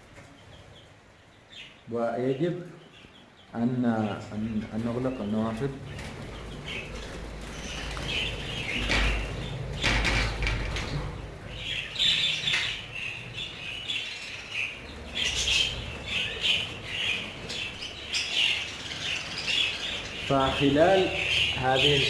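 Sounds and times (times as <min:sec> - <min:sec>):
budgerigars chirping: 0:00.2 - 0:22.0
wings flapping: 0:05.6 - 0:11.4.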